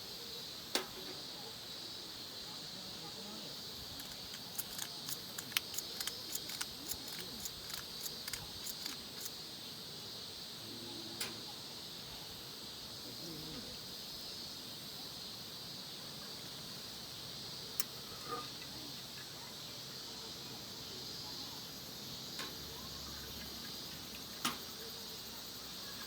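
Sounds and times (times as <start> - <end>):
crickets and insects chirping: 0.0 - 26.0
faint voices: 2.4 - 9.4
sharp clicks: 3.9 - 9.3.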